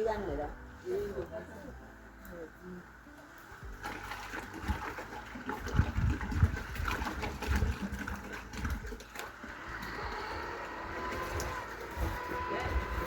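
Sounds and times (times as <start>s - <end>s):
sprayer hissing: 9.5s - 13.0s.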